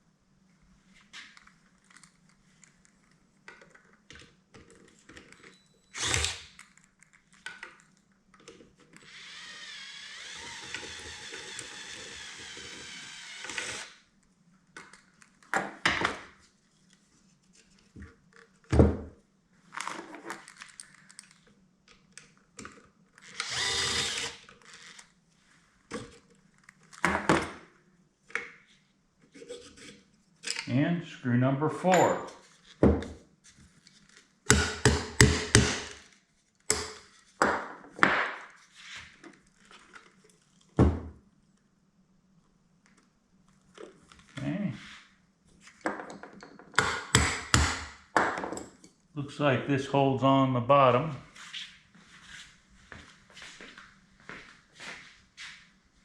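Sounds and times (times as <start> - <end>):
power drill running: 6.0 - 6.5, 9.1 - 14.0, 23.2 - 24.9
tools clinking and knocking: 31.8 - 32.4.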